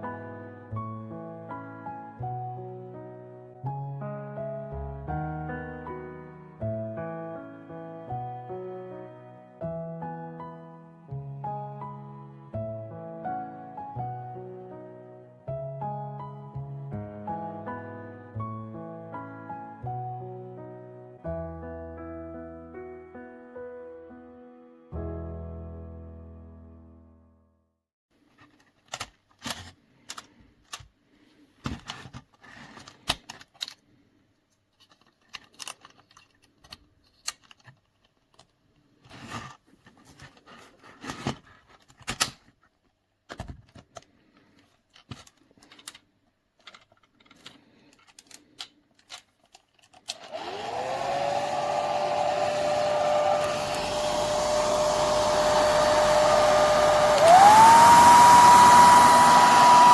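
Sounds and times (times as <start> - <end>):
handling clicks and knocks: 34.8 - 38.6, 43.3 - 50.2
hair dryer whine and air rush: 50.2 - 59.9.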